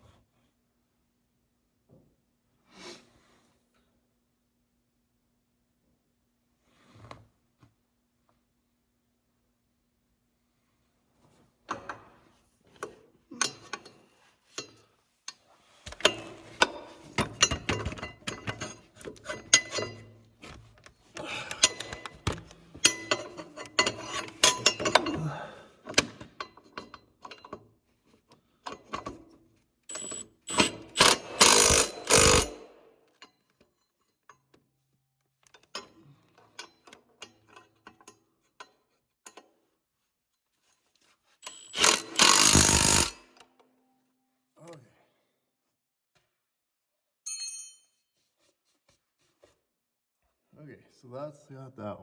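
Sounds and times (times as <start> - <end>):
wrenches and bolts clinking: 12.8 - 27.8, 29.9 - 34.5, 41.4 - 43.2
metal clanks: 13.4 - 20.2, 21.5 - 27.5
ratchet clicks: 29.9 - 32.7, 41.4 - 43.2.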